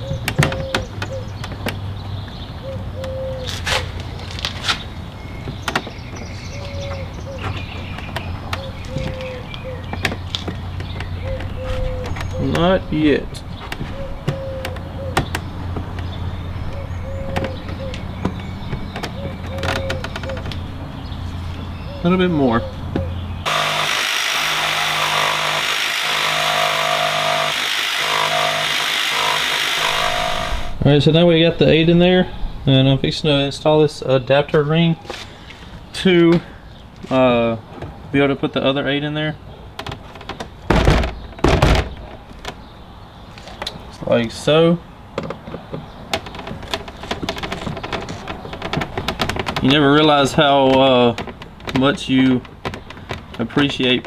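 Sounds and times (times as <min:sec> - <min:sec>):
sharp knocks and clicks: 0:05.4 - 0:12.7, 0:13.6 - 0:20.7, 0:39.8 - 0:42.7, 0:45.1 - 0:54.0
jigsaw cutting: 0:23.5 - 0:30.8.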